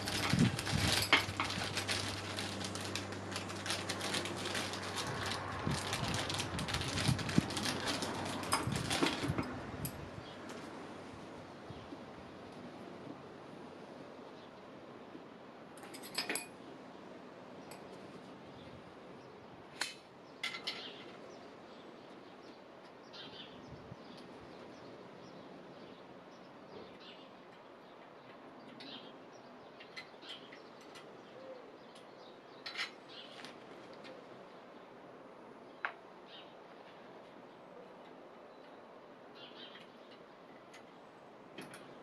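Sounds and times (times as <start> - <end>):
small hardware parts clinking: 0.0 - 4.8, 15.8 - 16.5, 20.4 - 21.0.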